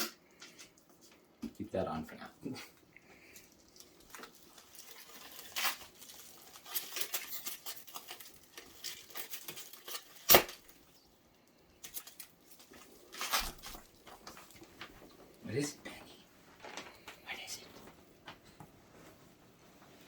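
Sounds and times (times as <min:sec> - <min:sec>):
packaging rustling and tearing: 0:03.3 - 0:11.0, 0:11.8 - 0:15.4.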